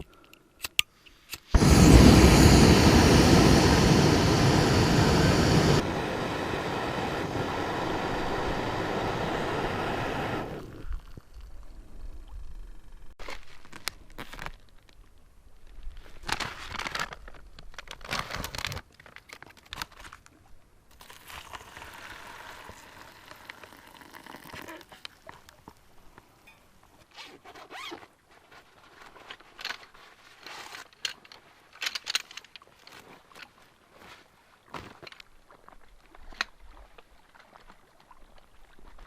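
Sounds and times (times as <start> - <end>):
camping gear rustling and crinkling: 13.2 - 21.8, 24.5 - 39.0.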